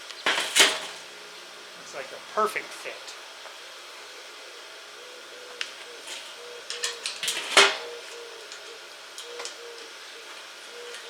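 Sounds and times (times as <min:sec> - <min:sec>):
steady hiss: 0:00.0 - 0:11.0
loud metal clank: 0:00.3 - 0:01.0, 0:07.0 - 0:07.9.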